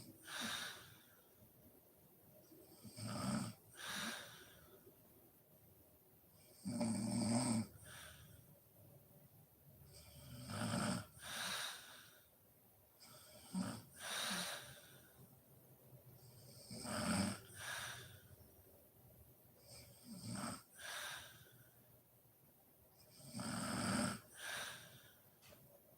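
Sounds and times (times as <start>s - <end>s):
woman snoring: 2.8s - 4.6s, 6.6s - 8.1s, 10.0s - 12.0s, 16.4s - 18.2s, 19.7s - 21.4s, 23.2s - 25.1s.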